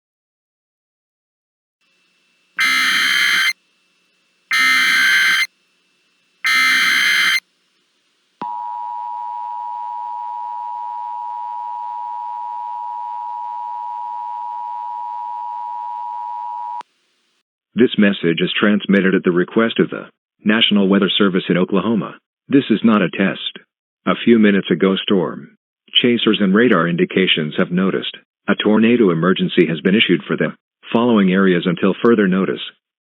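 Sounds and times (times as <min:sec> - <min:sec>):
harsh screechy data bursts: 0:02.6 - 0:03.6, 0:04.5 - 0:05.5, 0:06.4 - 0:07.4
two-tone alarm: 0:02.6 - 0:03.6, 0:04.5 - 0:05.6, 0:06.4 - 0:07.5.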